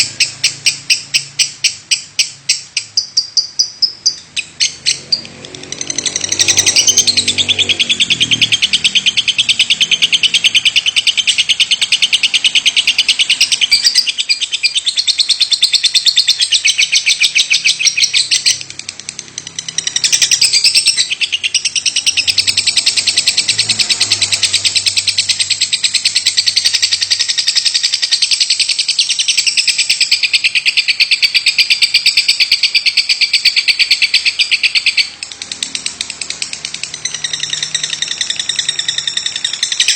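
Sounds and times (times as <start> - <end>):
bird chattering song: 0.0 - 39.9.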